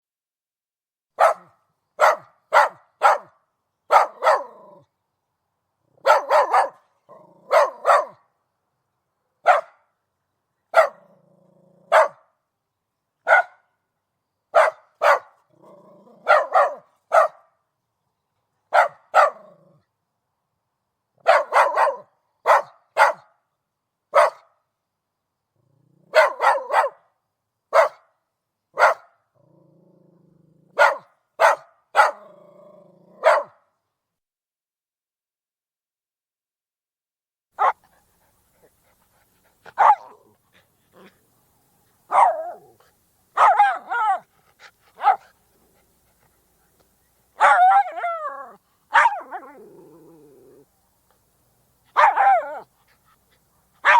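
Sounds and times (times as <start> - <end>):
dog barking: 1.2 - 4.8, 6.0 - 8.2, 9.4 - 9.9, 10.7 - 11.1, 11.9 - 12.3, 13.2 - 13.7, 14.5 - 15.4, 16.2 - 17.6, 18.7 - 19.6, 21.2 - 23.4, 24.1 - 24.6, 26.1 - 27.1, 27.7 - 28.1, 28.8 - 29.2, 30.7 - 32.4, 33.1 - 33.6, 37.6 - 37.9, 39.7 - 40.3, 42.1 - 42.8, 43.4 - 44.3, 44.9 - 45.3, 47.4 - 49.6, 51.9 - 52.7.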